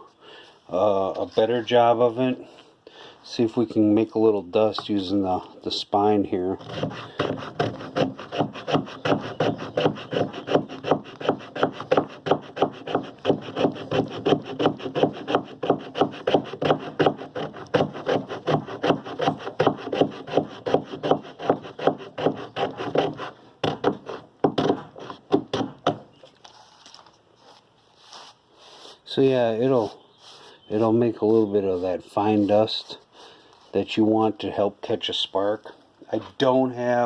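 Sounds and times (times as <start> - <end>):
knife spine scraping dry wood: 6.5 - 25.3, 27.4 - 33.8.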